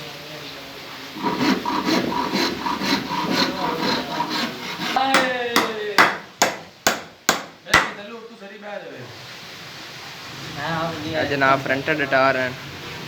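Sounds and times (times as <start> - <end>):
hand-sanding wood: 1.2 - 8.0
sharp knocks on wood: 5.2 - 8.0.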